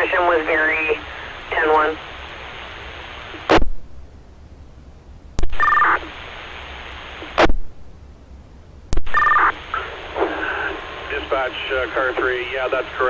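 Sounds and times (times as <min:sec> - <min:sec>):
radio squelch bursts: 0:00.0 - 0:03.7, 0:05.4 - 0:07.6, 0:09.0 - 0:13.0
radio channel hiss: 0:00.0 - 0:03.9, 0:05.4 - 0:07.7, 0:09.0 - 0:13.0.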